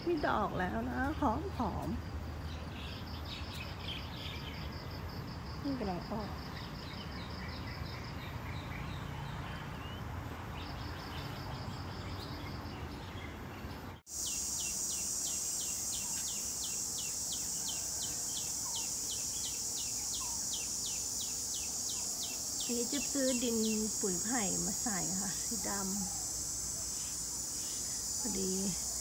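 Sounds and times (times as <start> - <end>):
birds chirping: 5.8 - 29.0
high insect buzz: 14.1 - 29.0.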